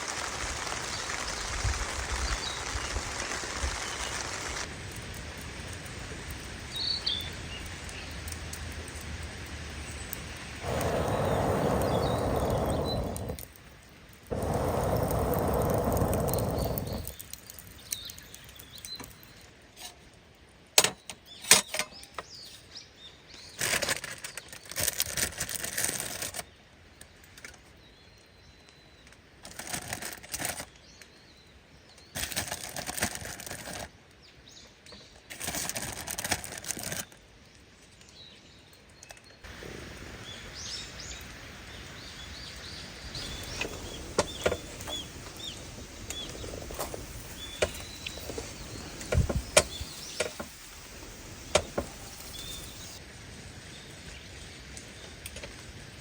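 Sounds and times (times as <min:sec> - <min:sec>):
faint bird chirps: 0:10.6 - 0:13.4, 0:40.2 - 0:53.0
rustling of camping gear: 0:10.6 - 0:13.5, 0:14.3 - 0:17.6, 0:23.4 - 0:26.4, 0:29.4 - 0:30.7, 0:32.1 - 0:33.9, 0:35.2 - 0:37.2, 0:39.2 - 0:53.0
sharp clicks: 0:43.2 - 0:53.0.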